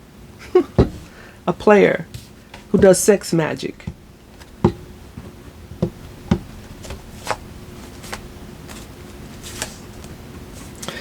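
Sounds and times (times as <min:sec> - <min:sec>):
faint steady hum: 0:00.0 - 0:11.0
cards snapping and tapping: 0:05.8 - 0:07.4.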